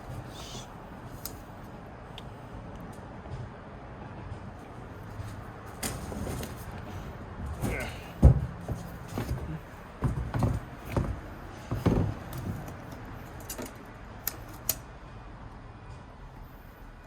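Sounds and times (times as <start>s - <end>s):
knocks and scrapes: 5.1s - 13.0s.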